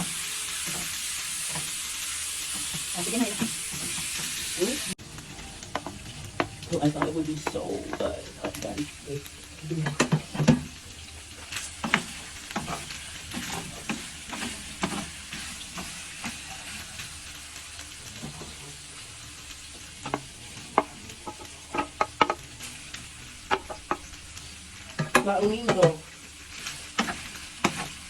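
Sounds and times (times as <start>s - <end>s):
food sizzling in a frying pan: 0.0s - 28.0s
utensil scraping and clinking on pan: 5.2s - 10.8s, 11.5s - 17.1s, 20.0s - 24.1s.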